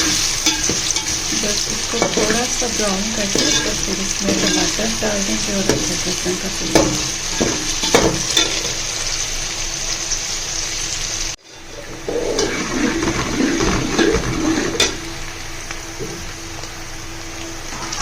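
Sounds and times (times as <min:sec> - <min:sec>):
clattering: 0:00.0 - 0:08.9, 0:11.4 - 0:15.1
spoon knocking in pan: 0:00.0 - 0:08.9, 0:11.4 - 0:15.1
water splashing: 0:00.0 - 0:09.0, 0:11.4 - 0:15.3
onions sizzling in oil: 0:00.0 - 0:18.0.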